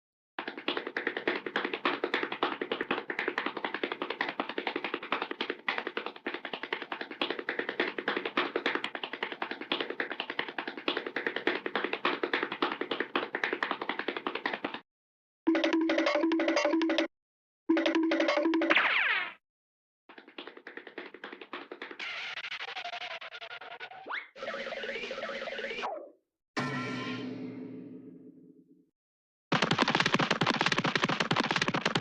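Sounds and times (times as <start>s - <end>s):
cartoon running footsteps: 0.4s - 14.8s, 20.1s - 23.4s, 29.5s - 32.0s
short tone-like effect: 26.6s - 28.3s.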